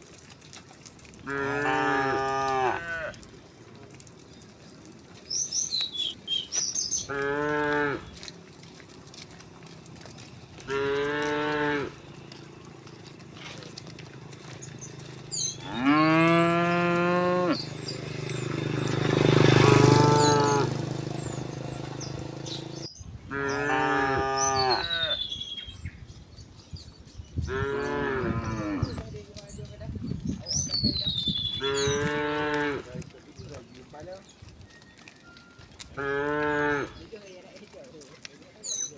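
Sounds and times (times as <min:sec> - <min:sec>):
cattle mooing: 0:01.2 - 0:03.2, 0:07.0 - 0:08.6, 0:09.3 - 0:25.2, 0:27.5 - 0:29.0, 0:31.6 - 0:33.0, 0:35.9 - 0:37.1.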